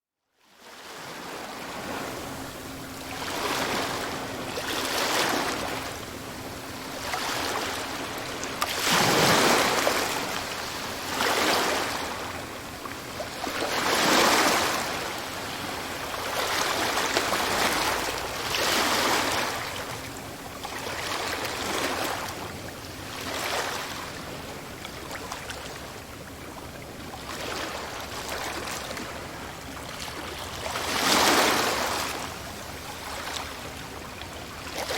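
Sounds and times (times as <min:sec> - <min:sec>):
ocean waves surging: 0:01.8 - 0:12.6, 0:13.2 - 0:20.1.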